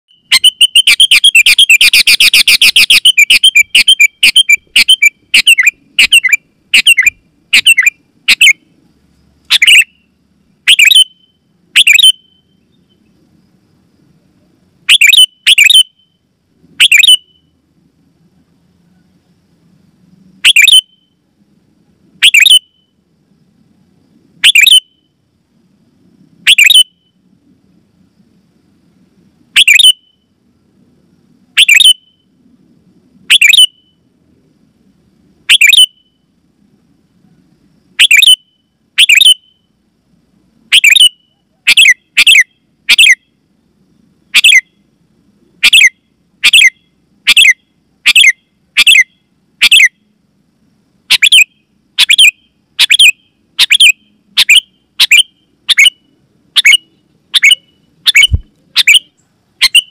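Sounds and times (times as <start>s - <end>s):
bird calling sharp notes: 0.1s - 8.7s, 9.5s - 13.1s, 14.9s - 16.2s, 16.8s - 17.5s, 20.4s - 21.2s, 22.2s - 23.0s, 24.4s - 25.2s, 26.4s - 27.2s, 29.6s - 30.3s, 31.6s - 32.3s, 33.3s - 34.0s, 35.5s - 36.2s, 38.0s - 39.7s, 40.7s - 43.3s, 44.4s - 44.7s, 45.6s - 50.0s, 51.1s - 59.9s.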